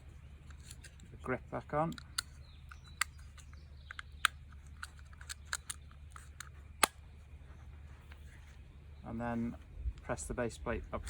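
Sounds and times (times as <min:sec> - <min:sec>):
pistol grip clicks and taps: 0:01.9 - 0:07.0.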